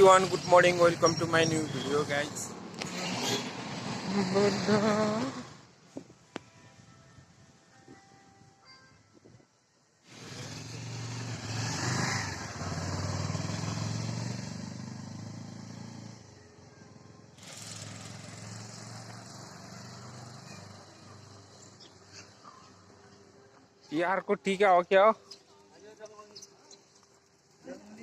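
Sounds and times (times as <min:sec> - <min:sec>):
vehicle engine humming: 0:00.0 - 0:05.8, 0:10.1 - 0:23.7.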